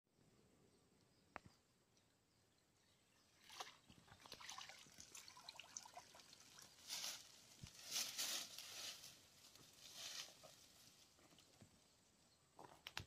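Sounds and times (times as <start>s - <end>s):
water dripping and trickling: 3.4s - 7.8s.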